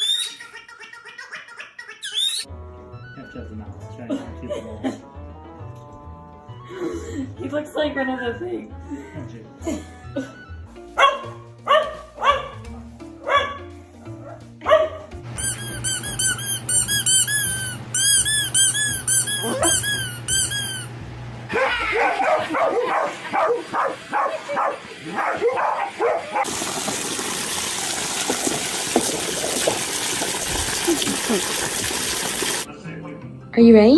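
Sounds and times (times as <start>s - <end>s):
background music: 2.5s - 15.3s, 32.7s - 33.9s
dog barking and yipping: 11.0s - 12.6s, 13.2s - 13.7s, 14.7s - 20.9s, 21.5s - 26.5s
high squeaks: 15.3s - 21.1s.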